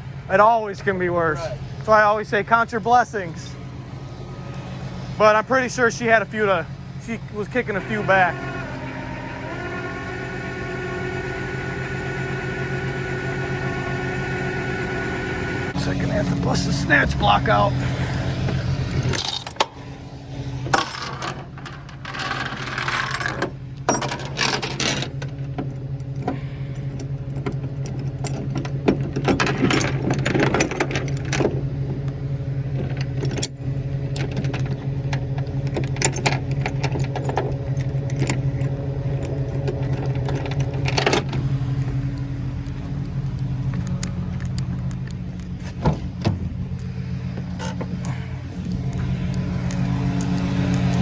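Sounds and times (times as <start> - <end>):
truck engine idling: 0.0 - 51.0
metal chain clinks and clanks: 18.9 - 19.9, 20.7 - 25.5, 28.2 - 31.5, 35.7 - 41.4.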